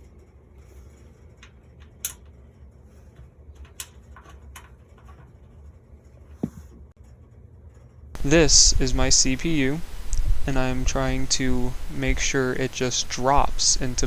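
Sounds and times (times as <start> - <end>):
steady low hum: 0.0 - 14.0
soft knock: 6.4 - 6.7.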